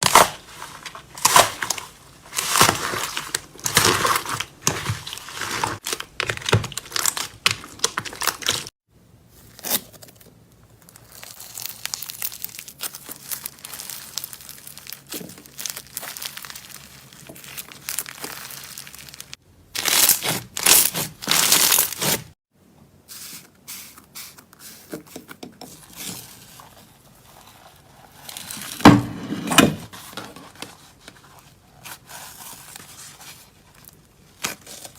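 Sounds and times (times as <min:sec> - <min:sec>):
slime crackling when squeezed: 0:11.0 - 0:22.2.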